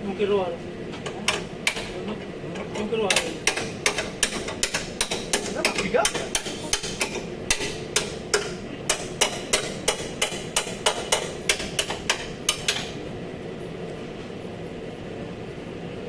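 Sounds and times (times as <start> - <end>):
hammer striking car body metal: 1.3 - 1.9, 3.1 - 13.0.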